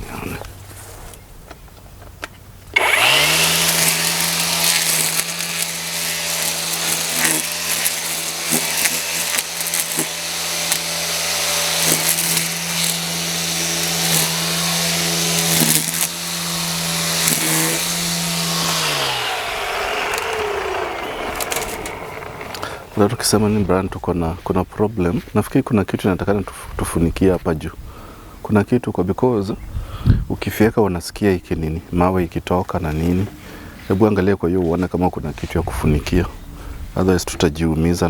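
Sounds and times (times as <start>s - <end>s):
string trimmer motor whirring: 2.6s - 23.0s
line cutting grass: 2.6s - 24.5s.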